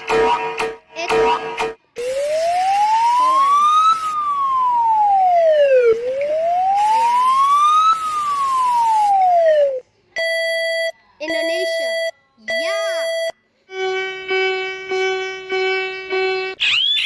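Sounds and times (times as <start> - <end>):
warning siren wailing: 1.2 - 9.8, 13.0 - 17.0.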